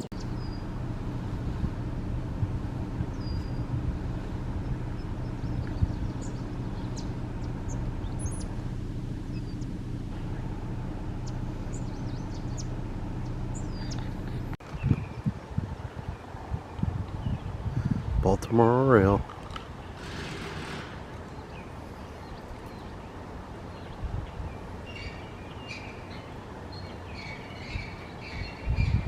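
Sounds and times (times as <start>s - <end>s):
low engine hum: 0.0s - 18.4s, 19.1s - 29.0s
bird chirps: 0.1s - 0.8s, 3.1s - 3.7s, 4.6s - 8.6s, 9.2s - 10.6s, 11.2s - 15.4s, 21.2s - 29.0s.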